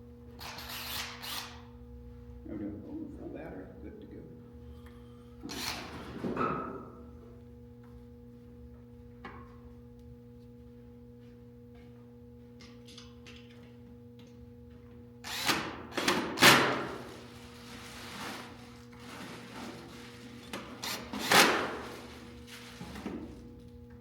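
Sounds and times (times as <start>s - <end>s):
steady low hum: 0.0s - 6.0s, 6.6s - 16.0s
cordless drill driving screws: 0.4s - 1.6s, 5.4s - 5.9s, 15.2s - 16.6s, 20.8s - 21.6s.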